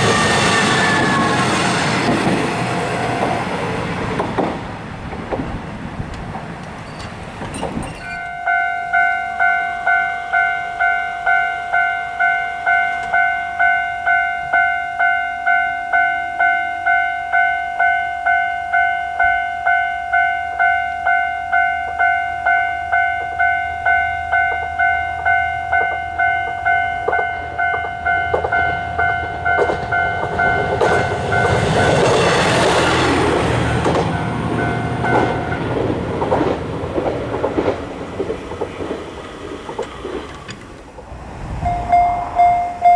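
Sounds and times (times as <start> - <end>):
level-crossing warning bell: 0.0 - 3.4, 6.7 - 38.0, 41.6 - 42.9
train wheels clacking on rail joints: 0.0 - 8.5, 23.0 - 42.9.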